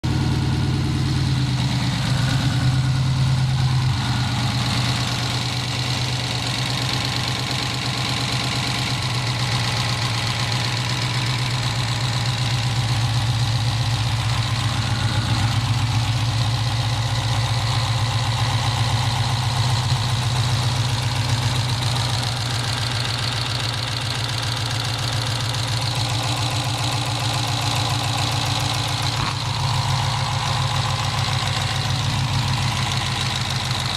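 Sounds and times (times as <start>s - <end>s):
engine idling: 0.0s - 33.9s
rapid light engine ticking: 0.1s - 33.9s.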